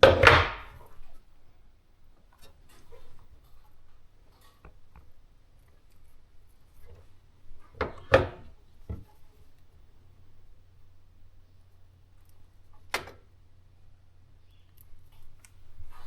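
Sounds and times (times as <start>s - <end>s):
hard objects knocking: 0.0s - 0.8s
faint low hum: 0.0s - 16.0s.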